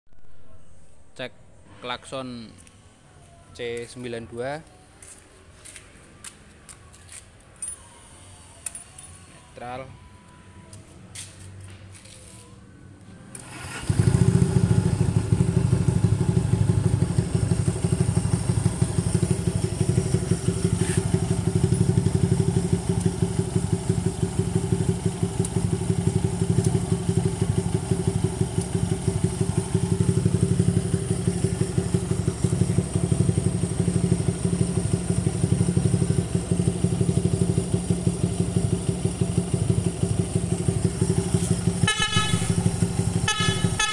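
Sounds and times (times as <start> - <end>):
motorcycle engine starting and idling: 13.2 - 43.9.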